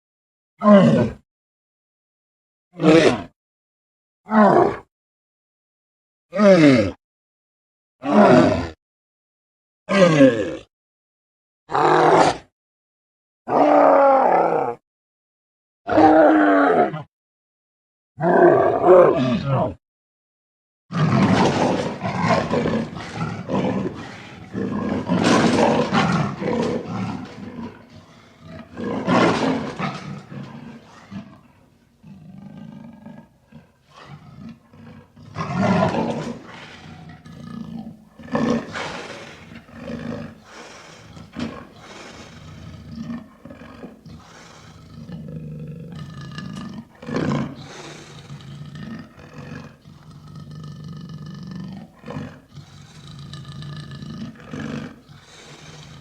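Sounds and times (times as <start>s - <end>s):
tiger roaring: 2.8s - 3.3s, 4.3s - 4.9s, 8.0s - 8.8s, 9.9s - 10.7s, 11.7s - 12.5s, 13.5s - 14.8s, 15.9s - 17.1s, 18.2s - 19.8s, 20.9s - 56.0s
low rumbling growls: 21.0s - 56.0s.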